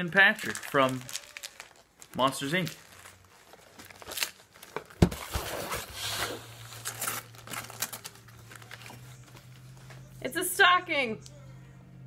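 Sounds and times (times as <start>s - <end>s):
wrapping paper crinkling: 0.0s - 10.1s.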